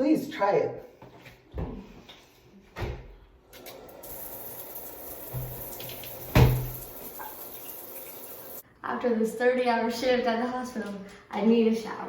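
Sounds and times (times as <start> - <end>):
shower head spraying water: 3.6 - 8.6
loud thump: 6.3 - 6.8.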